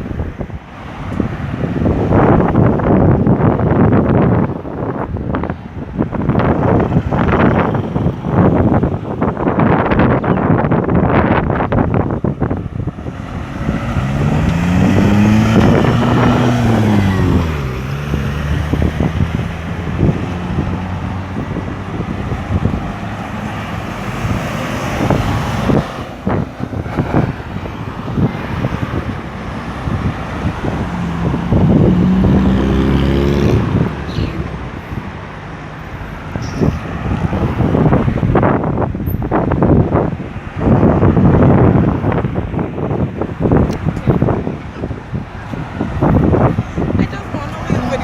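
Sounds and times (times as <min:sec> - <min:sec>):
vehicles passing: 0:00.0 - 0:48.0.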